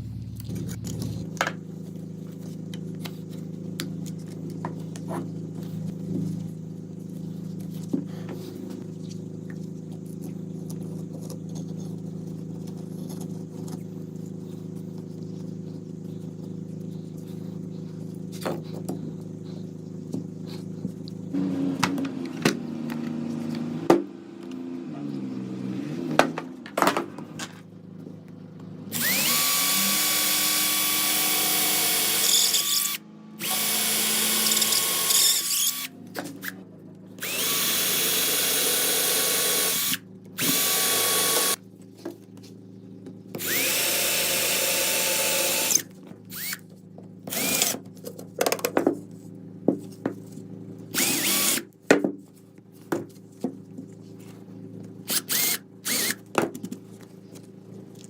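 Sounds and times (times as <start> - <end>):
power drill whining: 28.9 - 36.6, 37.2 - 41.6, 43.4 - 46.7, 47.3 - 47.8, 50.9 - 51.7, 55.1 - 56.3.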